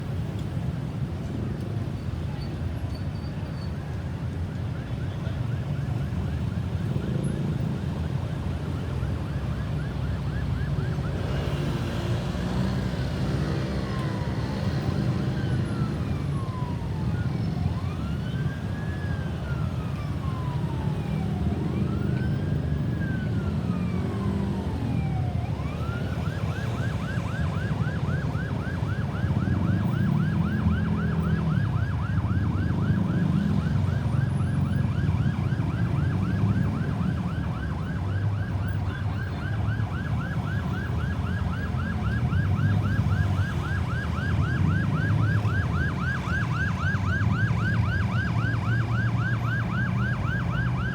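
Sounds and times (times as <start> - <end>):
vehicle engine and road rumble: 0.0 - 50.9
ambulance siren yelp and wail: 3.6 - 50.9.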